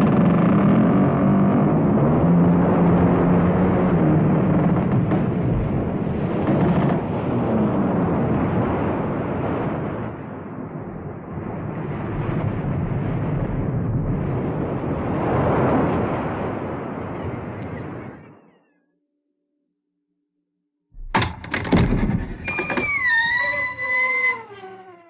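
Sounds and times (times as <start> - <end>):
rumbling roar: 0.0 - 8.7.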